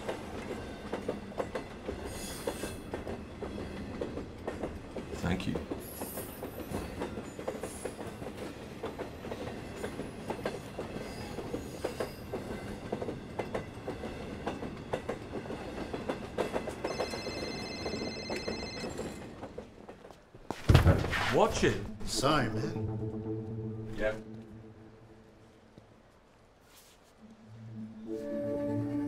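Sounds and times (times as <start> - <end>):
train wheels clattering: 0.0 - 20.6.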